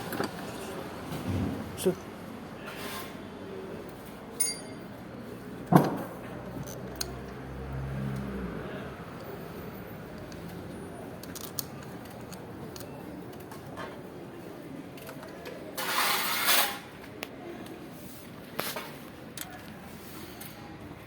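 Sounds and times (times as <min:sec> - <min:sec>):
metal tools clinking: 0:04.4 - 0:04.9, 0:11.2 - 0:13.0.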